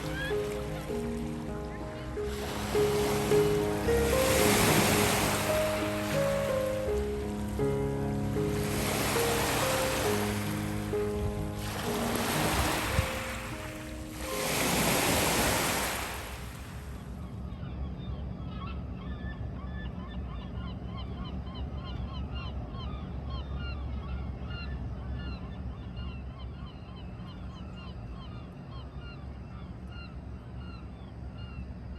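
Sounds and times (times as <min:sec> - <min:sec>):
flock of birds calling: 0:00.0 - 0:07.2
wave washing in: 0:00.0 - 0:17.0
low rumble of wind and water: 0:00.0 - 0:31.9.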